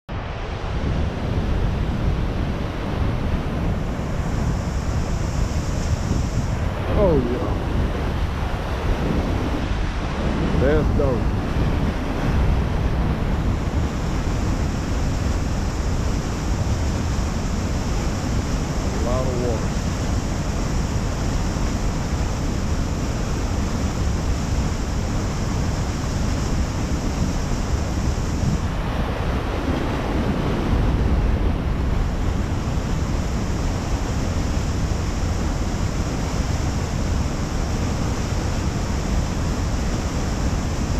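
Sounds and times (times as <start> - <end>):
water rushing: 0.1 - 40.9
wind buffeting microphone: 0.1 - 40.9.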